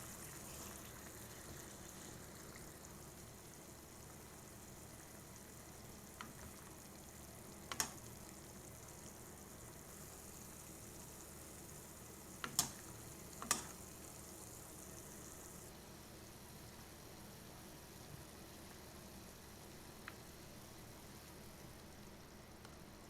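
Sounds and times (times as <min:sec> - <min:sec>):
pot of soup hissing: 0:00.0 - 0:07.6.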